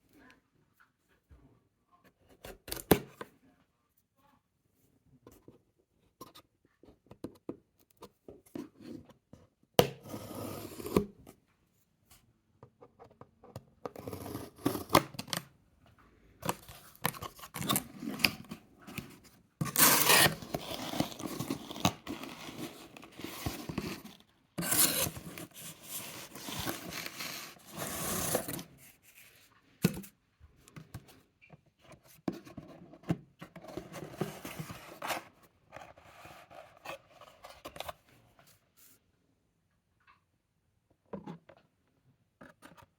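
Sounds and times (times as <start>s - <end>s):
cardboard being cut and torn: 19.6s - 28.7s.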